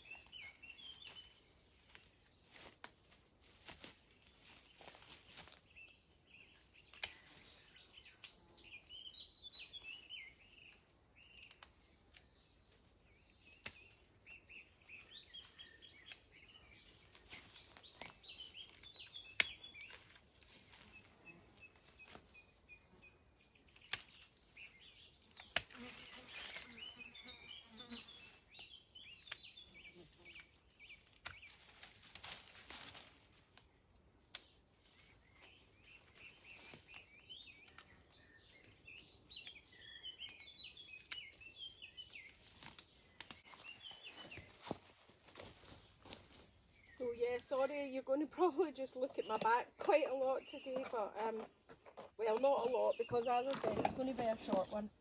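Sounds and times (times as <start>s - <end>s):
branches rustling: 0.0s - 55.0s
small birds singing and chirping: 0.0s - 55.0s
dead branches snapping: 6.8s - 7.5s, 10.7s - 12.4s, 17.0s - 20.9s, 23.8s - 24.3s, 25.3s - 26.8s, 30.3s - 34.6s, 42.1s - 43.6s.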